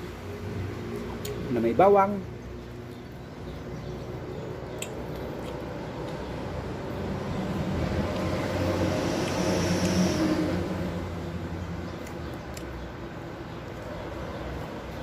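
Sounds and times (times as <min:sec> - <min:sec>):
vehicle engine passing by: 0:03.3 - 0:15.0.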